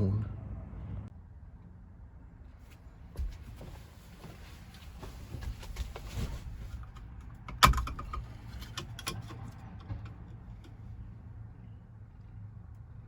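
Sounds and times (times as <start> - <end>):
handling clicks and rustles: 3.2 - 11.1.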